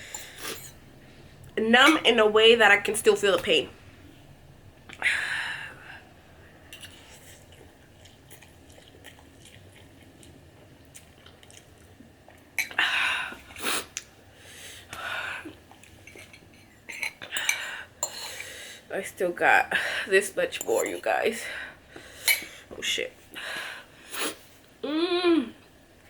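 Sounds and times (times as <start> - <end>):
person chewing noodles: 6.7 - 12.8, 15.4 - 16.3.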